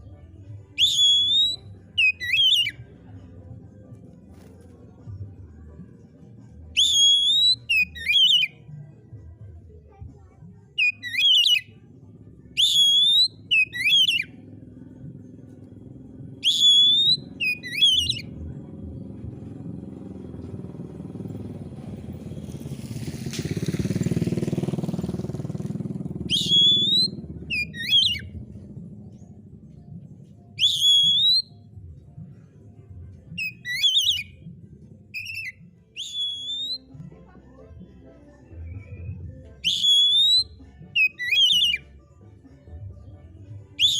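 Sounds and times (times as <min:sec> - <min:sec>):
bird singing whistled phrases: 0:00.8 - 0:02.8, 0:06.8 - 0:08.5, 0:10.8 - 0:11.7, 0:12.6 - 0:14.3, 0:16.4 - 0:18.4, 0:26.3 - 0:28.4, 0:30.6 - 0:31.6, 0:33.4 - 0:34.4, 0:35.1 - 0:36.9, 0:38.7 - 0:41.8
low rumble: 0:18.1 - 0:30.6, 0:34.2 - 0:35.2.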